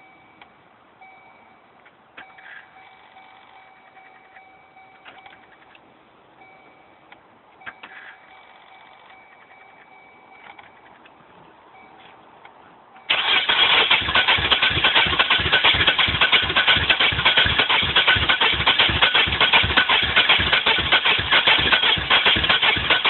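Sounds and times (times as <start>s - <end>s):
engine cranking by starter: 13.1s - 23.0s.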